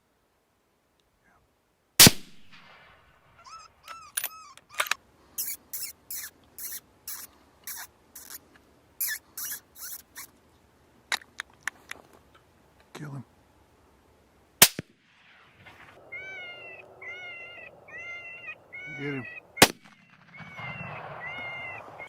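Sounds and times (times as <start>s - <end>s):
rifle shot: 2.0s - 3.0s, 14.6s - 16.0s, 19.6s - 22.0s
coyote yelping and squealing: 3.4s - 8.4s, 9.0s - 10.3s, 16.0s - 22.0s.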